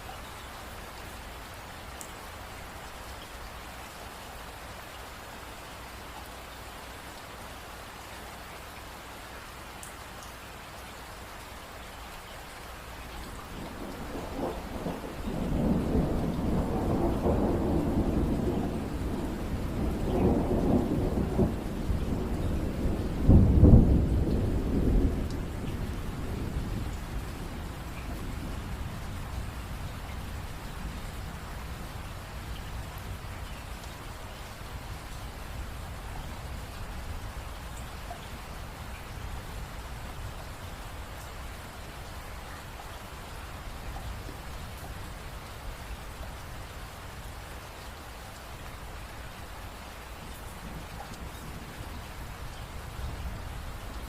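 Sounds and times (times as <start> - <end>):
steady rain falling: 0.0 - 54.0
rolling thunder: 13.5 - 32.0.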